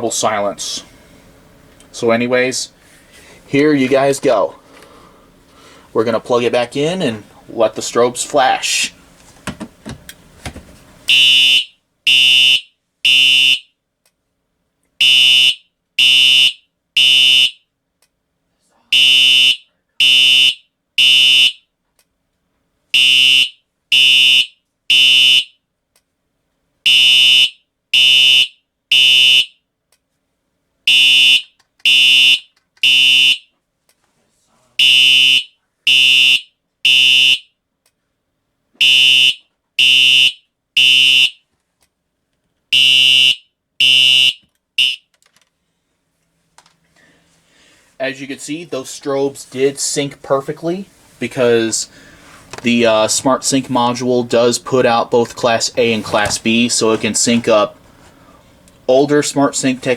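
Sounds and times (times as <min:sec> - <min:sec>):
buzzy fire alarm horn: 0:11.1 - 0:13.8, 0:15.0 - 0:17.7, 0:18.9 - 0:21.8, 0:22.9 - 0:25.6, 0:26.8 - 0:29.7, 0:30.9 - 0:33.5, 0:34.8 - 0:37.6, 0:38.8 - 0:41.5, 0:42.7 - 0:45.1.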